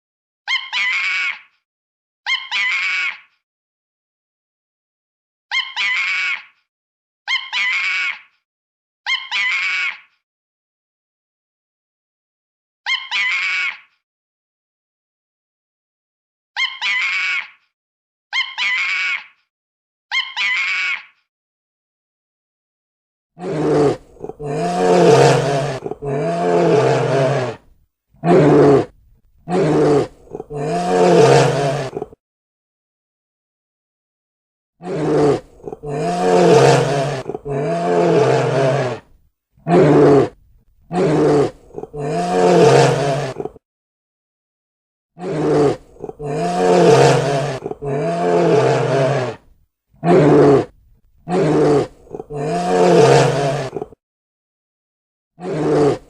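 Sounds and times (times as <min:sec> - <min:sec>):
bear roaring: 0:23.4 - 0:32.2, 0:34.8 - 0:43.6, 0:45.2 - 0:54.0, 0:55.4 - 0:56.0.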